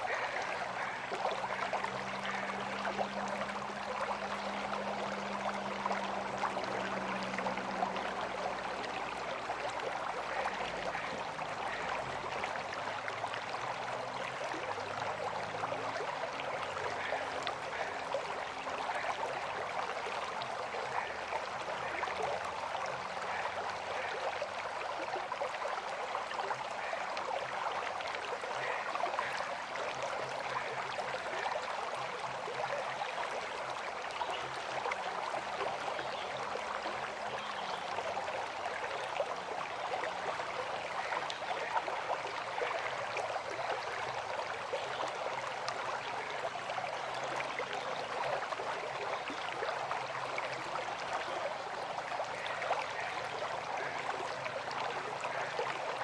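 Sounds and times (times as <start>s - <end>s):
river water flowing over stones: 0.0s - 56.0s.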